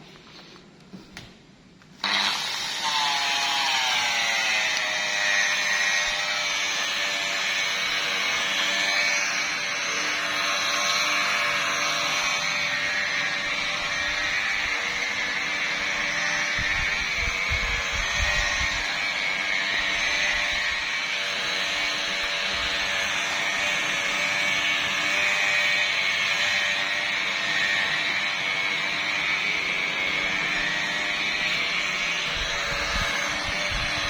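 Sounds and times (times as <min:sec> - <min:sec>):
machine polisher whining: 0:02.0 - 0:34.0.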